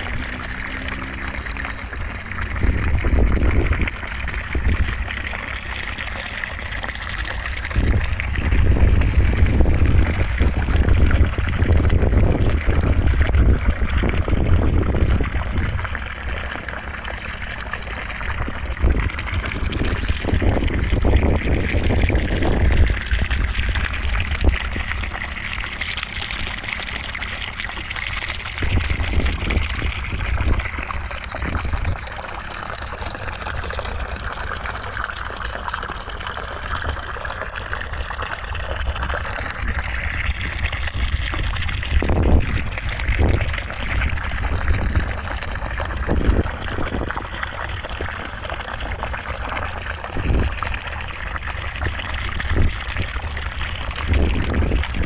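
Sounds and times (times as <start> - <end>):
deep rumble: 7.6 - 16.8, 17.5 - 26.1, 27.7 - 32.4, 38.6 - 48.2.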